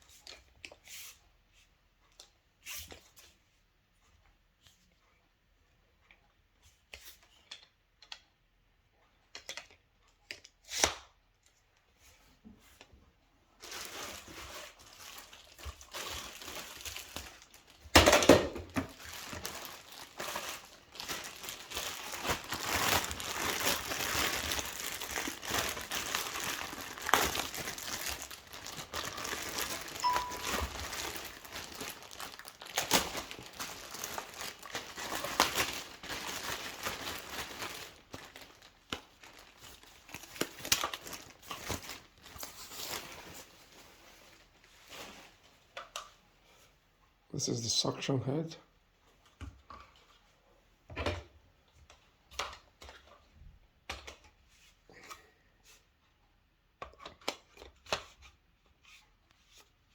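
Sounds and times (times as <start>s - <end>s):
plastic packaging crinkling: 13.5s - 45.6s.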